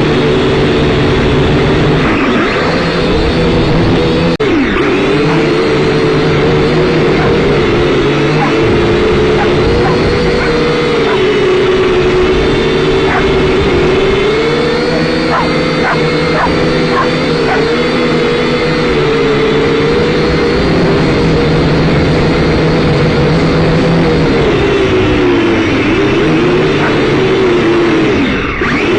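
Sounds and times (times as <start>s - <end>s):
quadcopter motors whining: 0.0s - 28.9s
dog yipping: 8.4s - 8.6s, 9.4s - 11.3s, 15.3s - 17.7s.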